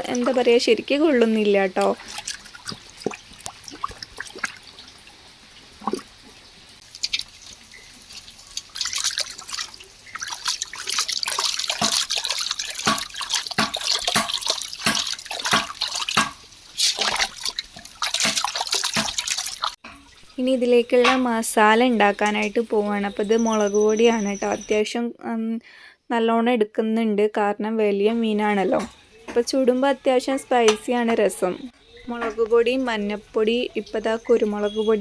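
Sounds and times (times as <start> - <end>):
water splashing and dripping: 0.0 - 23.5.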